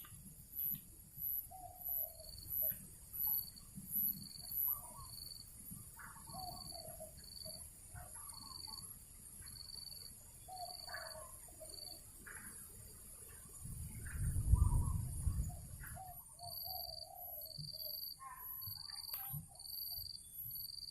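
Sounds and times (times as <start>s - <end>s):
birds calling: 1.4s - 20.1s.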